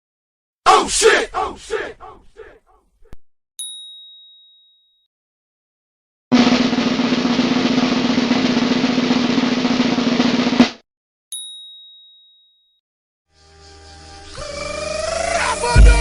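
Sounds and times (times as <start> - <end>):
high bell ding: 3.6 - 5.0, 11.3 - 12.8
snare drum roll: 6.3 - 10.8.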